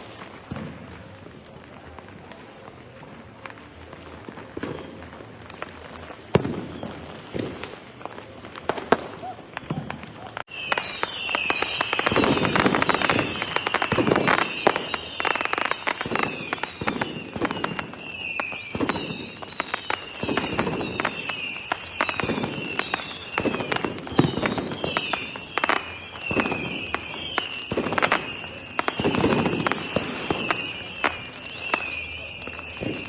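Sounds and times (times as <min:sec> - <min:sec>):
fireworks crackling and banging: 0:00.0 - 0:33.0
falling firework whistles: 0:04.2 - 0:33.0
heavy firework booms: 0:06.3 - 0:07.8, 0:11.3 - 0:15.2, 0:26.2 - 0:33.0.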